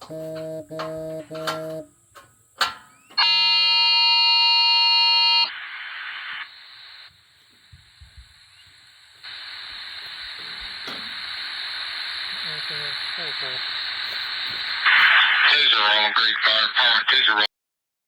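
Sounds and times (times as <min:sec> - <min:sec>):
buzzing alarm tone: 0:00.0 - 0:01.9, 0:02.6 - 0:05.6
steady hiss: 0:00.0 - 0:03.2, 0:04.1 - 0:17.5.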